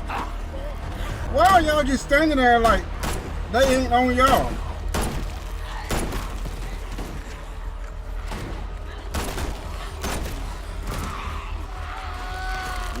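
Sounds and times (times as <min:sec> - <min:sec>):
gunshots: 0:02.6 - 0:07.6, 0:08.2 - 0:11.6.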